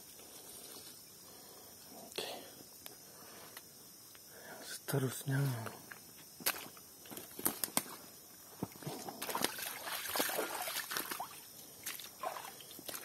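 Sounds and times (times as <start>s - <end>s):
water sloshing and splashing: 8.6s - 13.0s.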